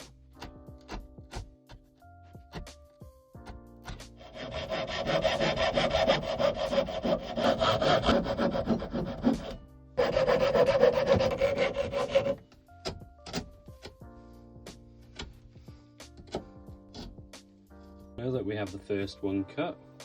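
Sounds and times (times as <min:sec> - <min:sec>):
hand saw cutting wood: 0:03.4 - 0:12.4.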